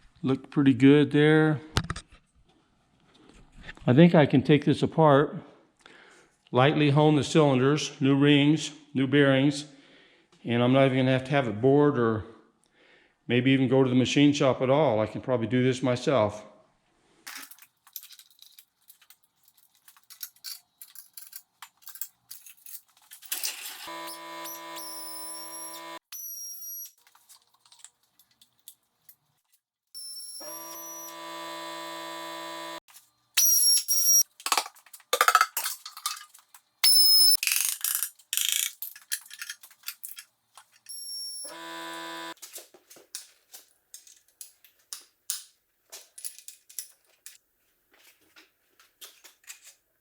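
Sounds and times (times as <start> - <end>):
power tool motor buzzing: 23.9 - 26.0, 30.0 - 32.8, 40.9 - 42.4.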